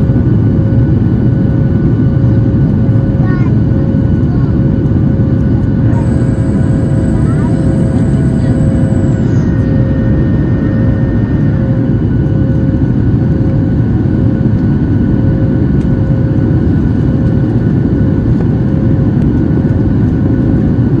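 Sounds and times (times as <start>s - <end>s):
faint steady hum: 5.8s - 9.7s.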